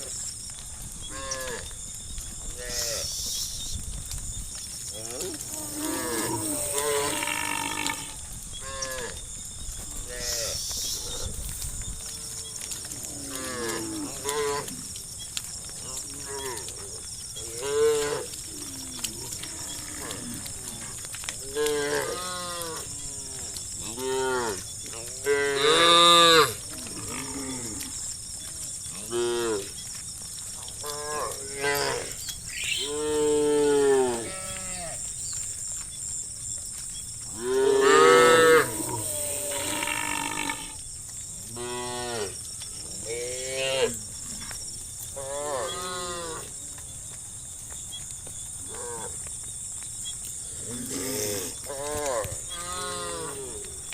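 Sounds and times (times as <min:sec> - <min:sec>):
cattle mooing: 0:30.9 - 0:35.6.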